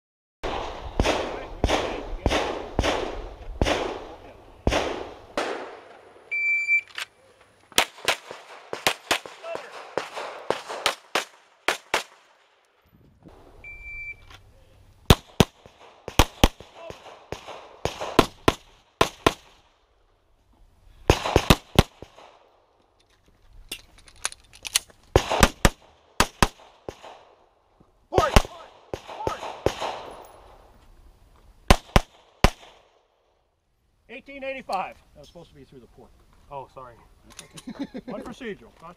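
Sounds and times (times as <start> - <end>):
gunshots in quick succession: 0.4 - 5.9, 7.8 - 12.4, 15.1 - 19.6, 21.1 - 22.4, 25.2 - 27.3, 28.2 - 30.2, 31.7 - 32.9
short high electronic beeps: 13.6 - 14.3.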